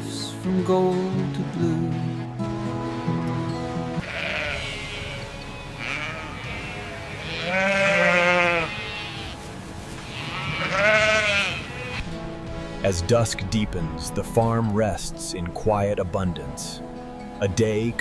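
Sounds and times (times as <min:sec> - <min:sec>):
sheep bleating: 0:04.0 - 0:12.0.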